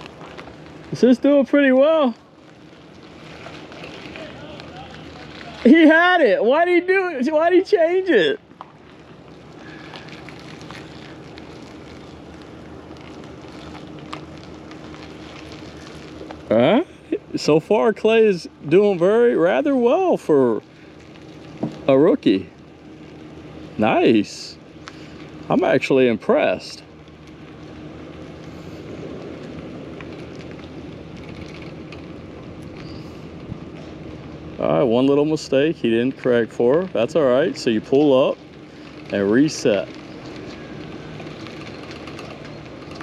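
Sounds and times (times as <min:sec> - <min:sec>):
truck running at low speed: 0:00.0 - 0:07.4, 0:08.0 - 0:43.0
light crackles: 0:00.0 - 0:43.0
steady background hiss: 0:00.0 - 0:43.0
small ticks: 0:37.9 - 0:43.0.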